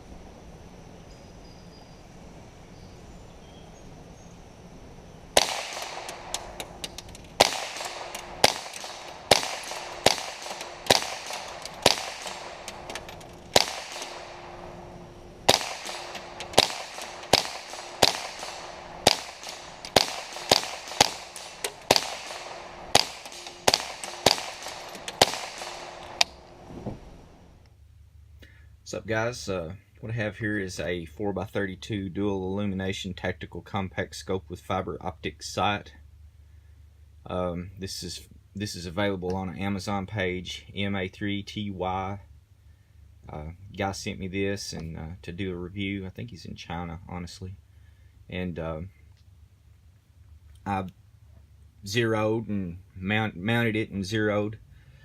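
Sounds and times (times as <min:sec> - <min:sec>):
rifle shots: 0:05.4 - 0:26.7.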